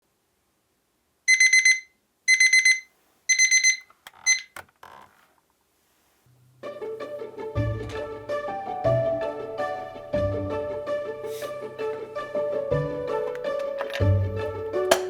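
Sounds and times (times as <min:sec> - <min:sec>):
alarm clock beeping: 0:01.3 - 0:04.5.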